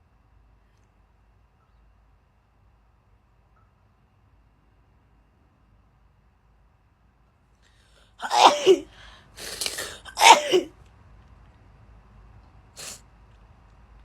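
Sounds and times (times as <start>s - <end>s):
sharp breath: 7.6s - 10.7s, 12.8s - 13.0s
short sniff: 7.8s - 10.7s, 12.8s - 13.0s
girl sneezing: 8.2s - 10.7s.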